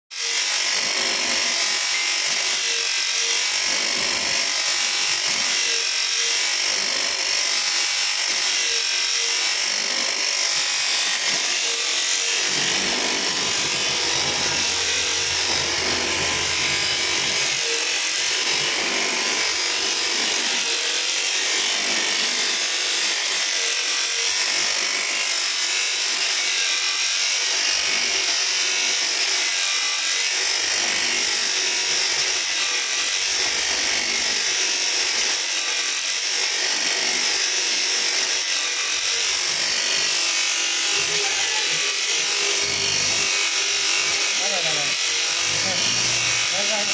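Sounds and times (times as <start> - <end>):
machine tool cutting hiss: 10.5 - 21.1, 38.7 - 46.9.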